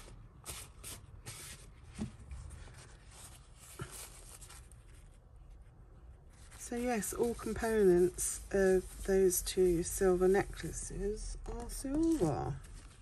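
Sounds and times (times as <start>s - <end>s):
jewellery scratching and rubbing: 6.4s - 10.8s.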